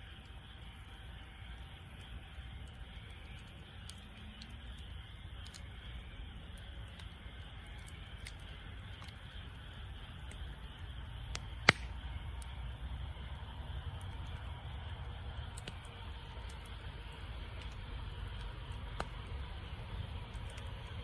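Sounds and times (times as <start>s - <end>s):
wood fire crackling: 0.0s - 21.0s
loud pop from fire: 11.3s - 12.0s.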